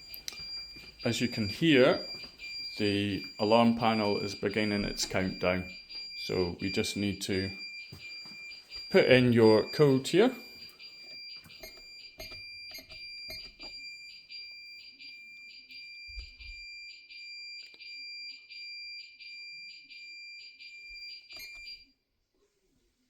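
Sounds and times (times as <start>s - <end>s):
alarm panel pulsed beeping: 0.0s - 21.9s
keypad button clicks: 11.5s - 13.7s.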